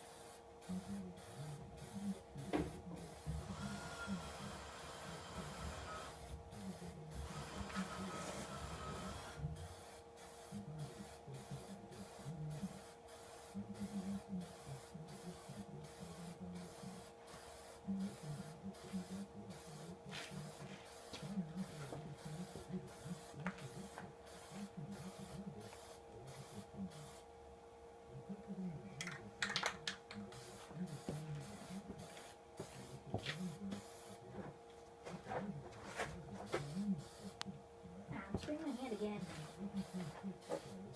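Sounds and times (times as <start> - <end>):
steady low hum: 0.0 - 40.9
spray can hissing: 38.8 - 40.8.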